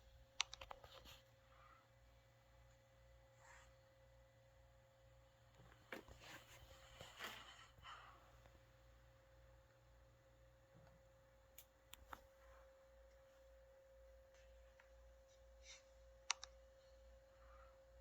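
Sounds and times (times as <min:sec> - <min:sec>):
faint steady hum: 0:00.0 - 0:18.0
sharp clicks: 0:00.4 - 0:00.9, 0:16.3 - 0:16.6.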